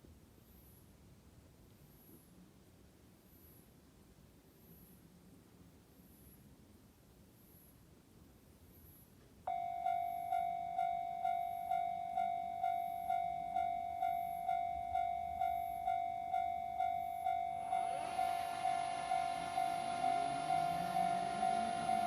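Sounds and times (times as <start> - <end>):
level crossing warning bell: 9.5 - 22.0.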